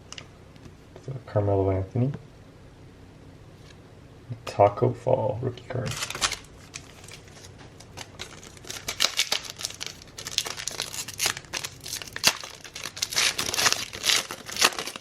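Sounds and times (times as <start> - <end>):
plastic wrapper crinkling: 5.8 - 15.0.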